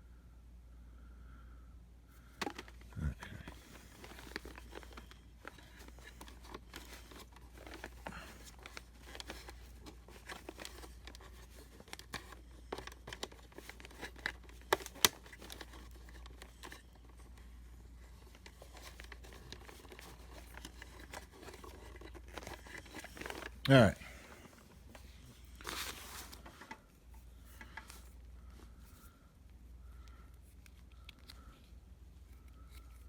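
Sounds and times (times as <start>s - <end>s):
plastic and wire clicks: 3.6s - 17.1s.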